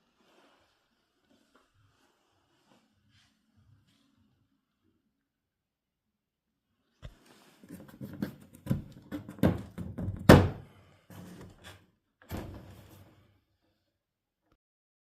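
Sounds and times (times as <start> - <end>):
knocks and thumps: 8.1 - 10.6.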